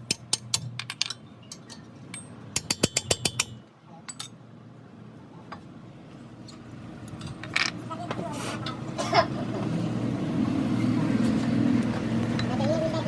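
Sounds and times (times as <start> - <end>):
metallic clicking of hand tools: 0.0 - 4.4.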